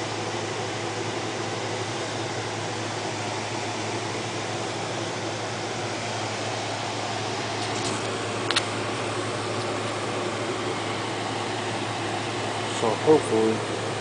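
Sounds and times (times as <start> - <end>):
computer fan noise and hiss: 0.0 - 14.0
constant low hum: 0.0 - 14.0.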